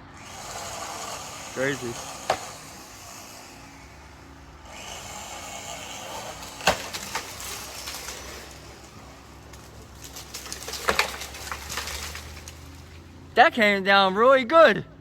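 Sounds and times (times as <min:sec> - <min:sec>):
rush of branches: 0:00.0 - 0:13.4
tree cracking and falling: 0:00.2 - 0:13.4
sharp wood snap: 0:01.9 - 0:02.8, 0:05.8 - 0:12.9.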